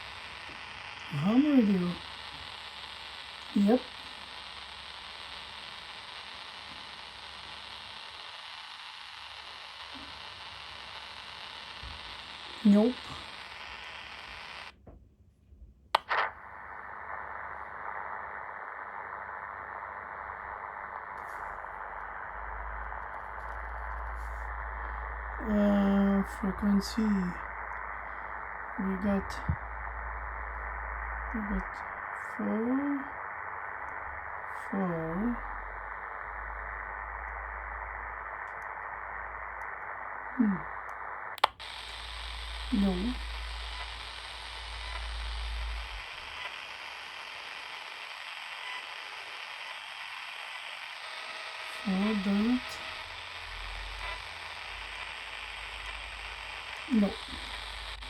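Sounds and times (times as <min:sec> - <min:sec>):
radio static hiss: 0:00.0 - 0:14.8, 0:15.9 - 0:58.0
radio click: 0:00.0 - 0:15.0, 0:16.0 - 0:58.0
radio switch click: 0:16.0 - 0:16.4, 0:40.8 - 0:50.8.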